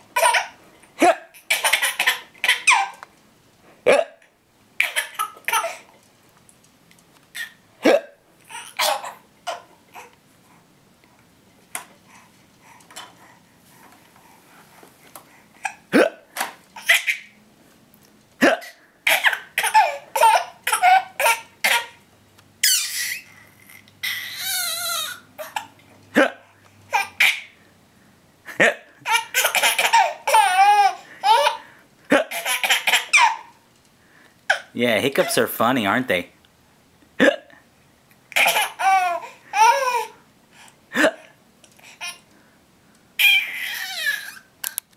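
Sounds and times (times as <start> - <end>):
child hiccuping: 3.9 - 5.8, 7.4 - 10.1, 15.6 - 17.2, 18.4 - 21.9, 37.2 - 37.6
child laughing: 28.6 - 33.5.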